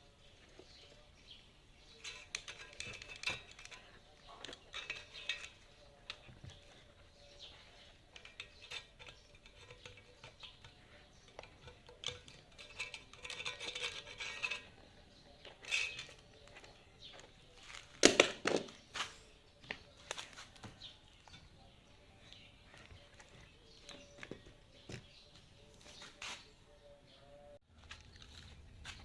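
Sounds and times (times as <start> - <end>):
scraping and rattling: 0.2 - 26.5
small metal tools clinking: 1.8 - 18.7.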